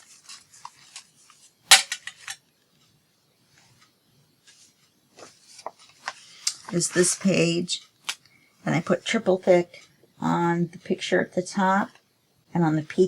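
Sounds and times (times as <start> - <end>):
paper rustling: 0.0 - 2.4, 4.4 - 8.2.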